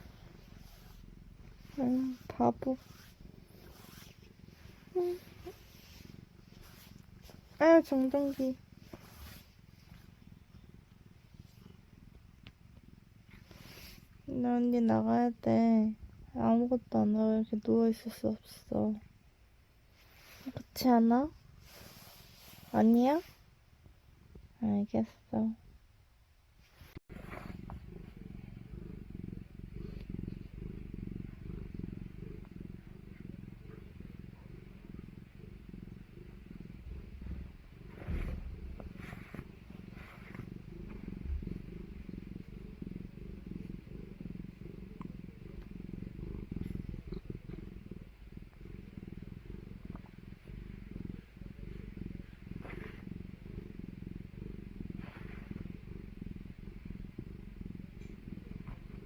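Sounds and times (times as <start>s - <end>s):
cat purring: 0.0s - 25.9s, 26.6s - 59.0s.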